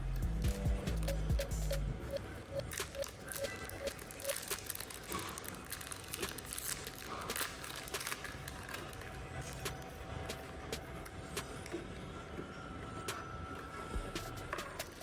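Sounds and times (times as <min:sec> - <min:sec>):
plastic packaging crinkling: 0:02.8 - 0:09.6.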